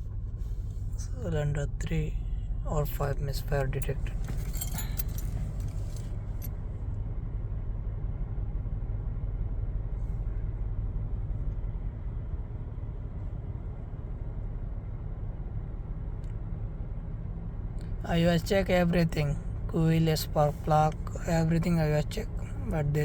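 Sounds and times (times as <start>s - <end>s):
car engine idling: 0.0s - 6.5s, 17.8s - 23.0s.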